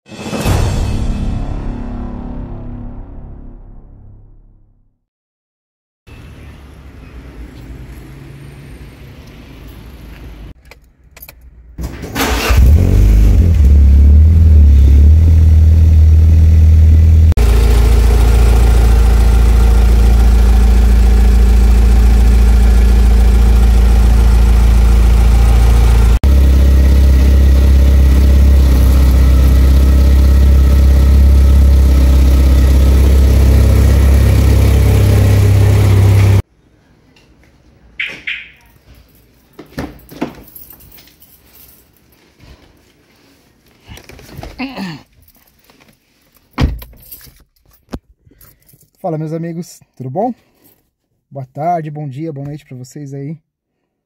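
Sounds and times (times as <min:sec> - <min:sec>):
car engine starting and idling: 0:10.7 - 0:36.4.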